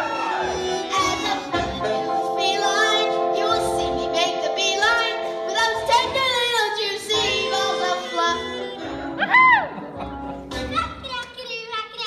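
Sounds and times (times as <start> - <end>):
child singing: 2.3 - 8.8, 10.6 - 12.0.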